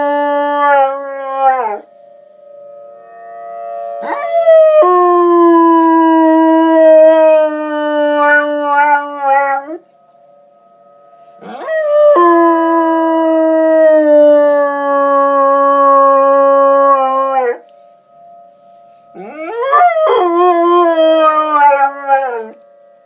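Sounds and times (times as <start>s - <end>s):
dog howling: 0.0s - 1.9s, 4.0s - 9.8s, 11.4s - 17.6s, 19.2s - 22.6s
tornado siren tone: 0.0s - 23.0s.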